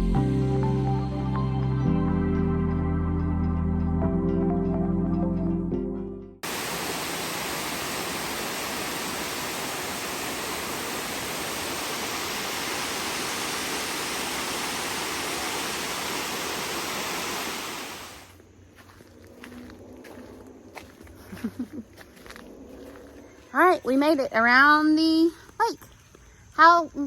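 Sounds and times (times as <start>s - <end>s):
waterfall rushing: 6.4s - 18.3s.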